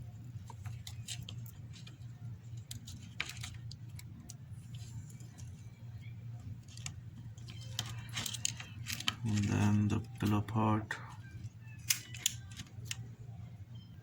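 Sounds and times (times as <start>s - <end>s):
steady low hum: 0.0s - 14.0s
small parts clicking and tapping: 0.4s - 5.6s, 6.6s - 10.3s, 11.4s - 13.1s.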